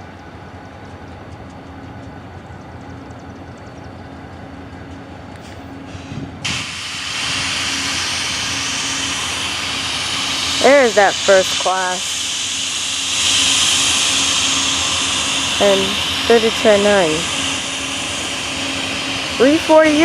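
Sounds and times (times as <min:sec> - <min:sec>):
diesel locomotive engine rumble: 0:00.0 - 0:20.0
train rushing past: 0:03.0 - 0:20.0.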